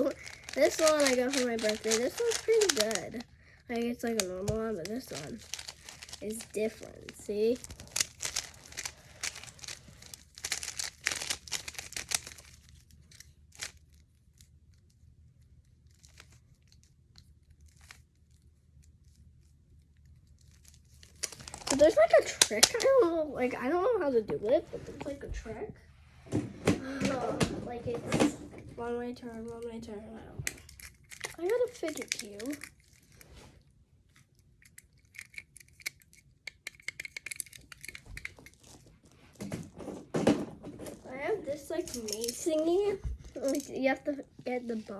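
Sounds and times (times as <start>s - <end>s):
puzzle cube clicking twists: 0.0s - 3.2s, 4.0s - 14.0s, 20.0s - 23.1s, 30.4s - 33.2s, 34.4s - 38.8s.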